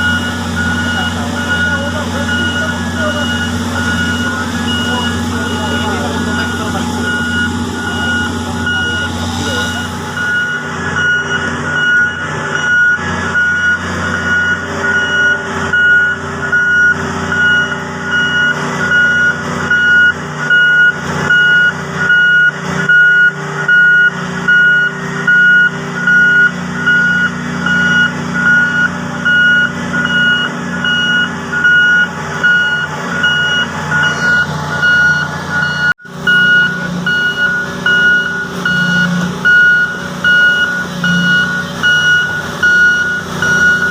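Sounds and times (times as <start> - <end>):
diesel engine drone: 0.0 - 43.9
reversing alarm beeping: 0.0 - 43.9.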